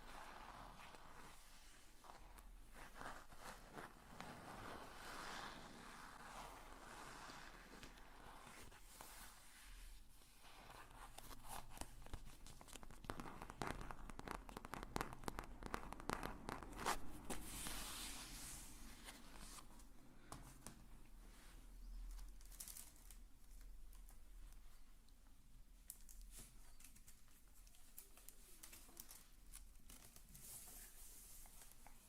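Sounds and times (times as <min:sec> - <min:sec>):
material crinkling and tearing: 0:22.0 - 0:24.3, 0:25.9 - 0:32.0.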